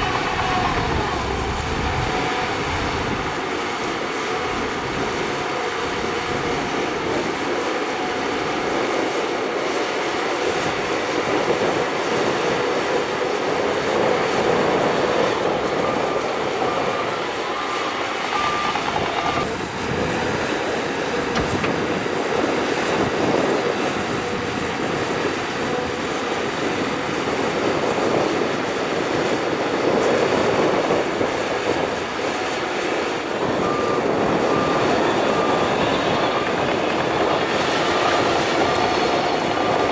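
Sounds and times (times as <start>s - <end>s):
steel tracks clanking and squealing: 0.0s - 8.8s, 10.5s - 27.2s, 29.8s - 39.9s
bulldozer engine under load: 0.0s - 39.9s
short repeated beeping: 16.7s - 19.4s.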